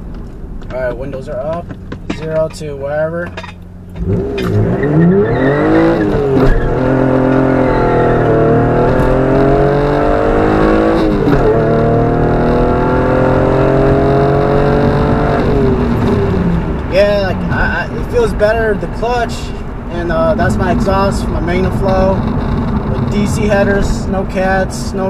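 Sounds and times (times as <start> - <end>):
car engine accelerating hard: 3.9 - 18.8, 19.6 - 25.0.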